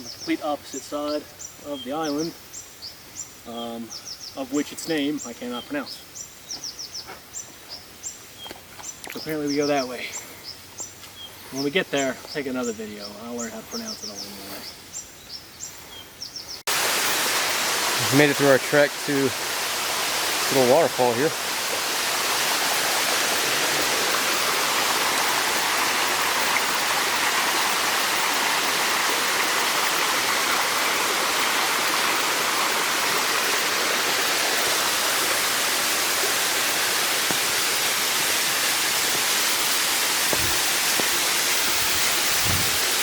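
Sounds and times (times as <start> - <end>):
waterfall rushing: 16.7 - 43.0.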